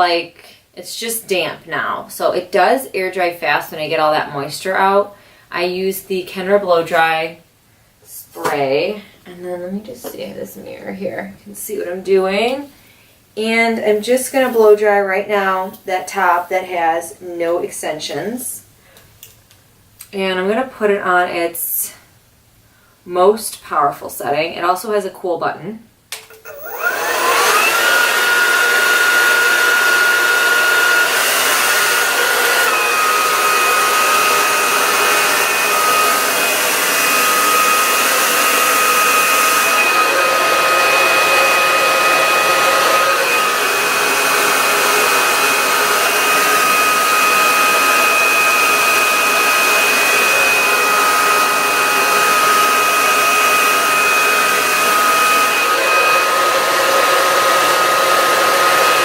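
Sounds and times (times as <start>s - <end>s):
hair dryer running: 26.2s - 59.0s.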